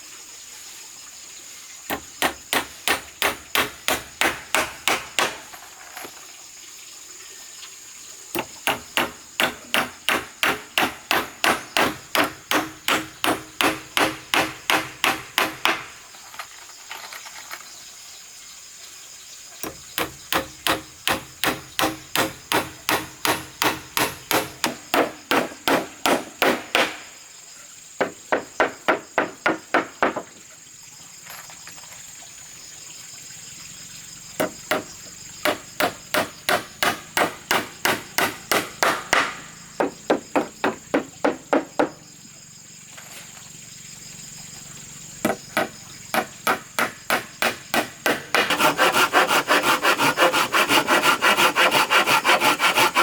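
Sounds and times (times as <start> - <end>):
high insect drone: 0.0 - 53.0
hammer striking wood: 1.9 - 5.5, 8.4 - 16.0, 19.6 - 27.1, 28.0 - 30.3, 34.4 - 42.0, 45.2 - 53.0
hand-sawing wood: 1.9 - 5.5, 8.4 - 16.0, 19.6 - 27.0, 34.4 - 41.9, 45.3 - 53.0.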